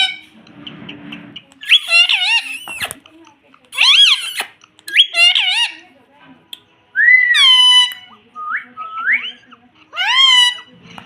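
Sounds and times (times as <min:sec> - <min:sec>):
parrot whistling calls: 0:01.6 - 0:02.9, 0:07.0 - 0:09.4.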